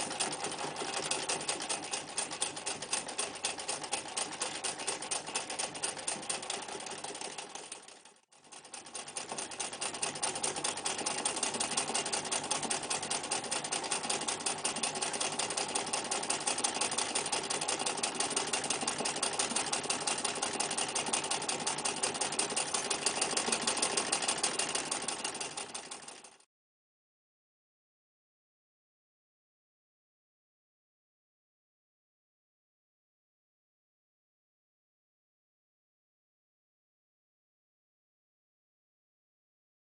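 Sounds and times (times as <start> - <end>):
sewing needle mechanism clicking: 0.0 - 26.4
sewing machine running: 0.0 - 26.5.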